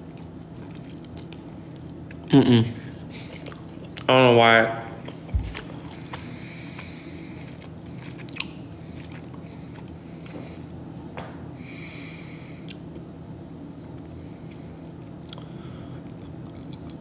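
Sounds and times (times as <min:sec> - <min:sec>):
dull thump: 0:05.3 - 0:05.8
person chewing food: 0:05.4 - 0:06.0, 0:07.5 - 0:10.3.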